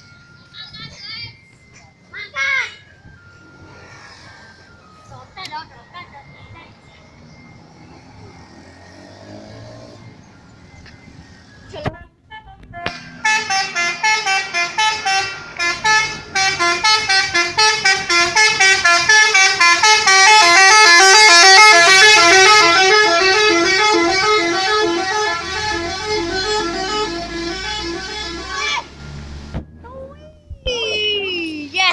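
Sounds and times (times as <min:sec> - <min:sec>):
multi-tone musical bus horn: 0:12.9 - 0:29.2.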